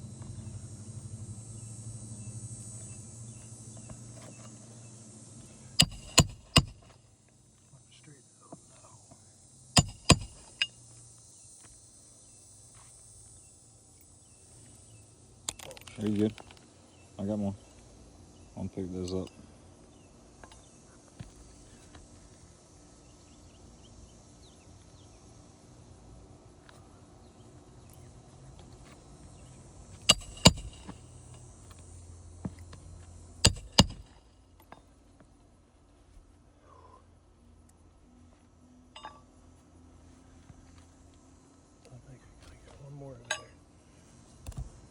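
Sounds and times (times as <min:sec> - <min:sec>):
hammer strikes on metal: 0:05.8 - 0:06.9, 0:09.8 - 0:10.7, 0:30.1 - 0:31.0, 0:33.4 - 0:34.2.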